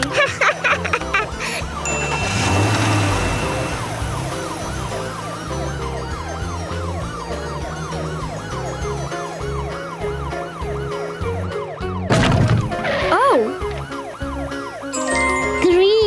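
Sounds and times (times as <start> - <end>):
background music: 0.0 - 16.0
cartoon siren wail: 3.1 - 14.9.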